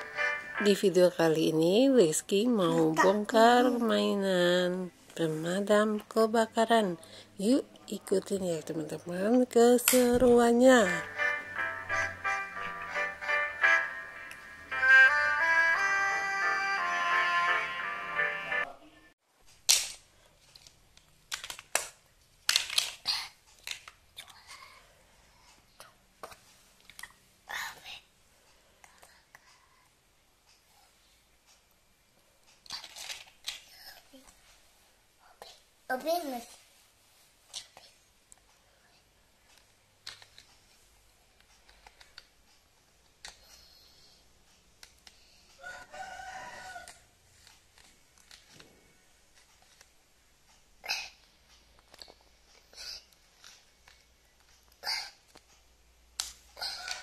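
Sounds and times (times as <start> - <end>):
plastic toy clicks and rattles: 19.6 - 24.5, 32.6 - 33.8, 39.5 - 40.6, 41.4 - 42.4, 43.0 - 43.6, 49.4 - 49.9, 51.7 - 52.2
rooster crowing: 45.6 - 47.1.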